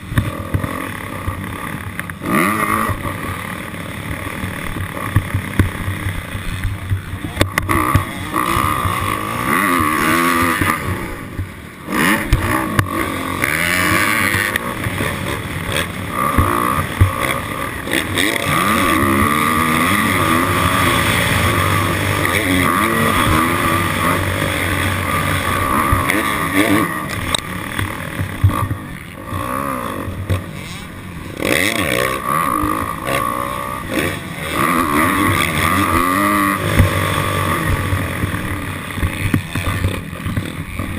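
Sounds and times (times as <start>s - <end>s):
dirt bike engine revving: 0.0s - 40.9s.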